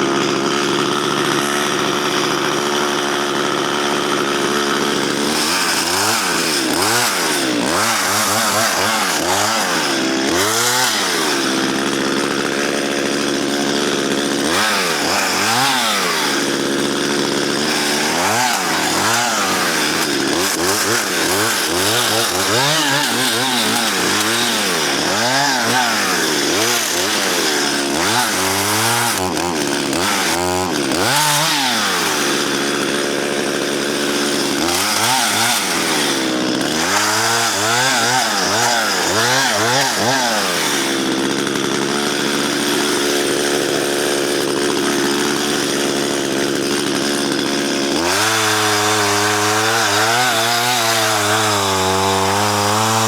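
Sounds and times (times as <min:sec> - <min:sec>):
chainsaw cutting wood: 0:00.0 - 0:53.0.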